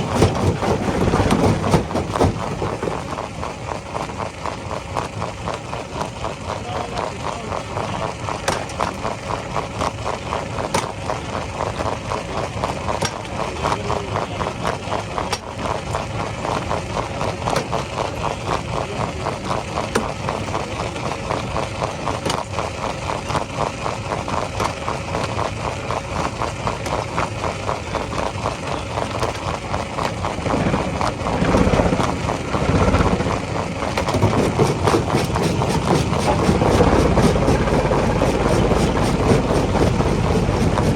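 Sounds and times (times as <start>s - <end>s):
rock-crushing machinery running: 0.0s - 40.9s
deep loud rumble: 30.2s - 40.9s.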